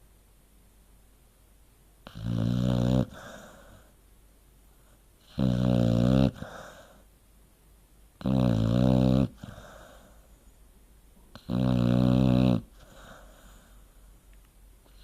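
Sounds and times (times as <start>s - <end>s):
dog snoring: 2.0s - 3.9s, 5.2s - 7.0s, 8.2s - 10.2s, 11.3s - 13.8s.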